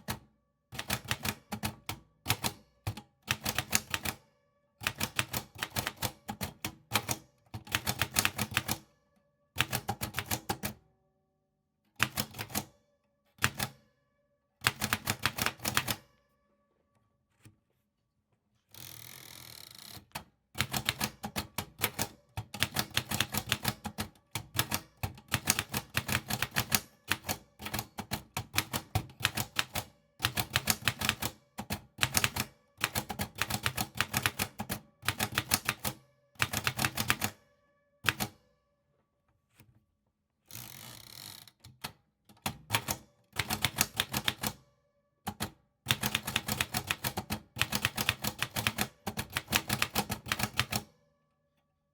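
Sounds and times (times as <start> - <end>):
typewriter keys clacking: 45.3 - 50.8.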